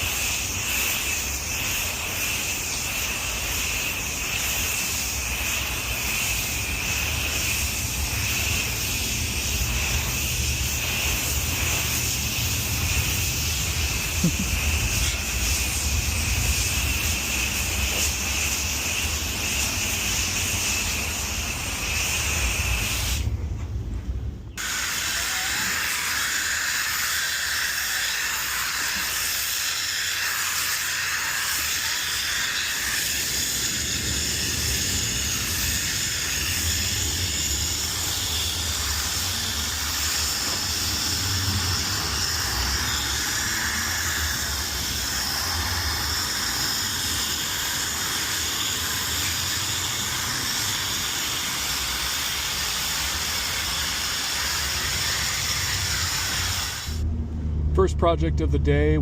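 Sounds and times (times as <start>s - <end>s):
water spraying onto pavement: 0.0s - 23.3s, 24.6s - 57.0s.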